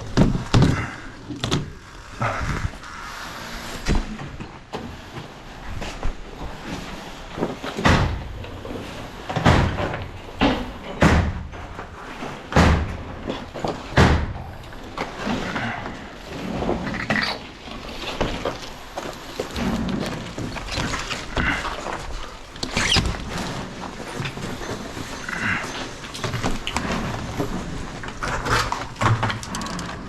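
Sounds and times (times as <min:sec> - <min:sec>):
clattering and scraping: 0:00.0 - 0:30.0
heavy knocks and bangs: 0:07.8 - 0:14.6.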